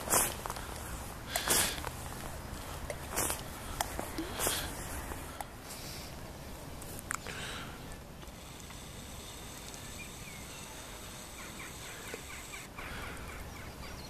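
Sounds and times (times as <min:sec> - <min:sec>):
low background hiss: 0:00.0 - 0:14.0
bird chirps: 0:09.7 - 0:14.0.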